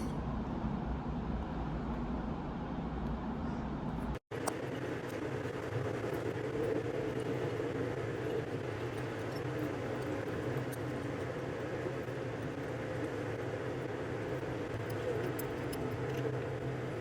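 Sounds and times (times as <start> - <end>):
vehicle rumble and hum: 0.0 - 17.0.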